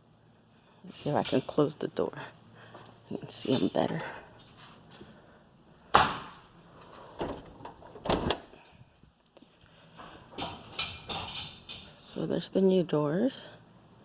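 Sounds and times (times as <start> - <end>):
door banging shut: 7.2 - 8.5.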